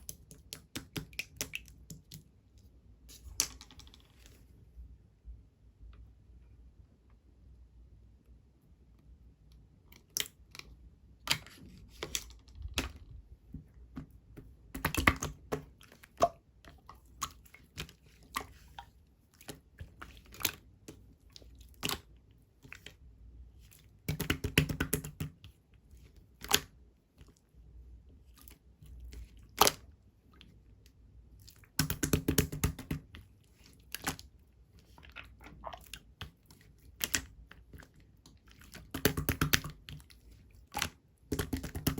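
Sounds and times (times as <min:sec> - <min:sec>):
crackling bubbly squelching: 0:34.2 - 0:37.7.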